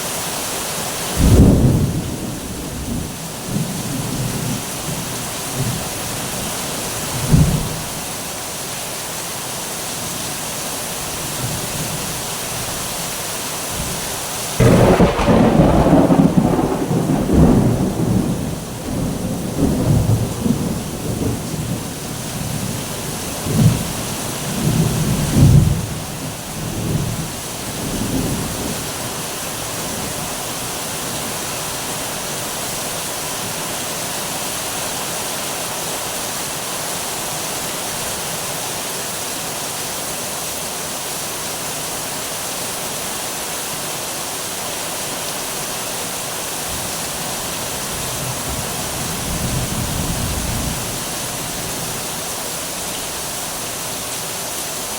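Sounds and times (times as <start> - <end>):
heavy rain falling: 0.0 - 54.9
thunder rumbling: 1.2 - 6.0, 14.6 - 22.8.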